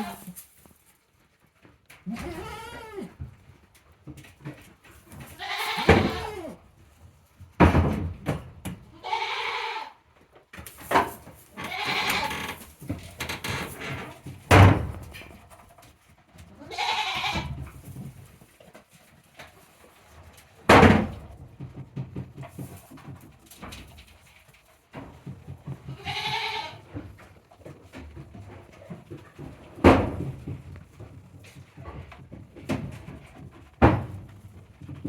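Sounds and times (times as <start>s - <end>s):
goats bleating: 0.0s - 0.3s, 5.4s - 6.6s, 9.0s - 10.0s, 11.6s - 12.5s, 16.6s - 17.5s, 25.9s - 26.9s.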